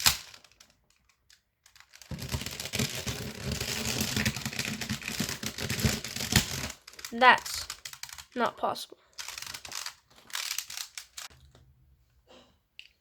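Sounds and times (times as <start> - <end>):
puzzle cube clicking: 9.2 - 11.3.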